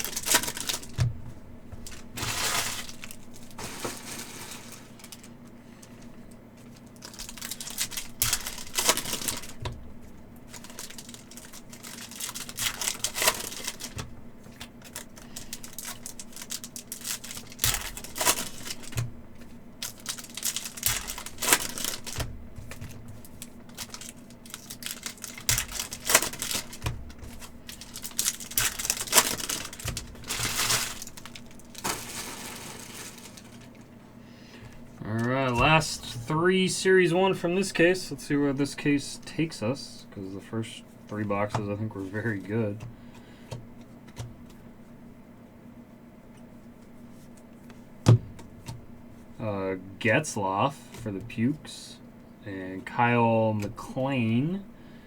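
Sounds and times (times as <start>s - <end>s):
wrappers tearing and crinkling: 0.0s - 1.0s, 1.8s - 9.8s, 10.4s - 34.0s, 34.8s - 36.2s
cards being handled: 0.0s - 33.9s, 34.6s - 36.2s
faint steady hum: 0.0s - 55.0s.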